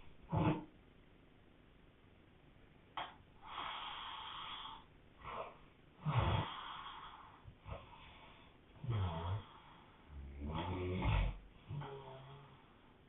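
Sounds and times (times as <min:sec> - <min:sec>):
person snoring hard: 0:06.0 - 0:07.1, 0:08.8 - 0:12.7.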